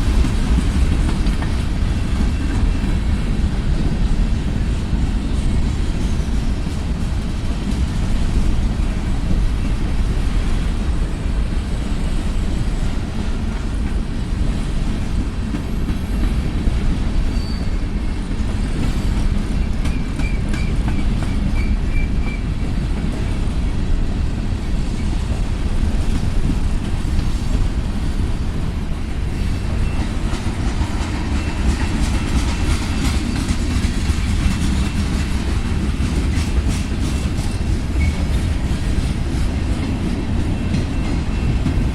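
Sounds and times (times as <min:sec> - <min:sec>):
freight train rumbling past: 0:00.0 - 0:41.9
wheels clacking over rails: 0:00.0 - 0:41.9
faint wheel squeal: 0:17.3 - 0:18.2.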